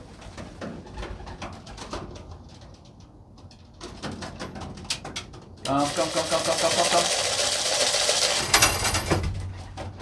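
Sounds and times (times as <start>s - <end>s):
quick rhythmic rattle: 5.7s - 9.2s.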